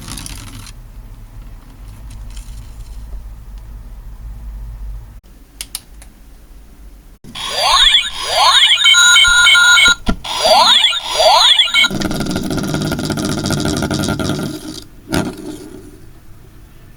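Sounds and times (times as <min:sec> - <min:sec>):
electronic toy zaps and beeps: 0:07.4 - 0:11.9.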